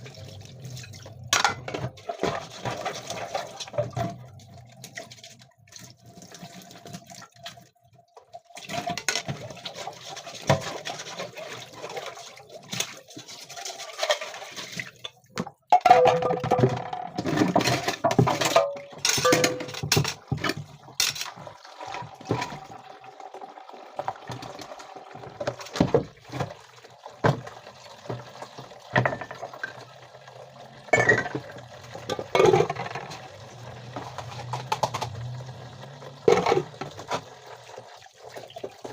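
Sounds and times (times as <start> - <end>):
dishes and pots clinking: 1.3 - 2.8, 15.7 - 21.4, 28.9 - 29.8, 30.9 - 33.3, 36.2 - 37.3
running splashing water: 17.5 - 38.9.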